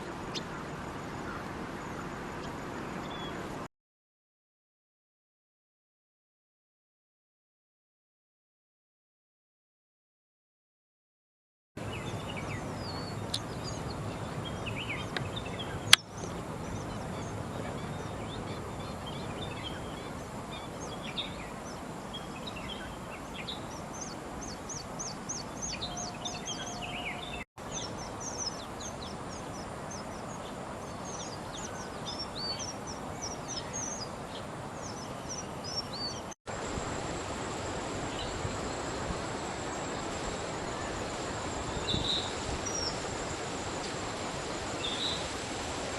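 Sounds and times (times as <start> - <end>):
birds chirping: 0.0 - 3.7, 11.8 - 36.4, 37.4 - 43.7, 44.3 - 45.9
outdoor background hiss: 0.0 - 3.7, 11.8 - 45.9.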